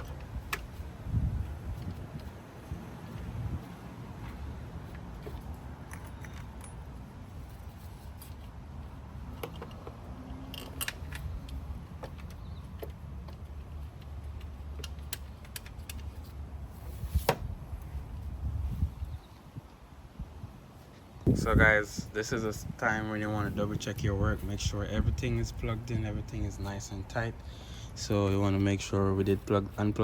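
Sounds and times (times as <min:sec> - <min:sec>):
metal tools clinking: 0:05.2 - 0:07.0, 0:09.3 - 0:12.4.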